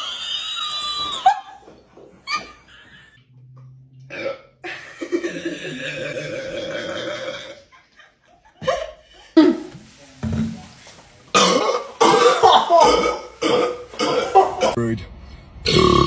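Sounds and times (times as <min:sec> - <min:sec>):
person burping: 0:04.1 - 0:04.5, 0:05.4 - 0:07.6, 0:11.4 - 0:14.8, 0:15.7 - 0:16.0.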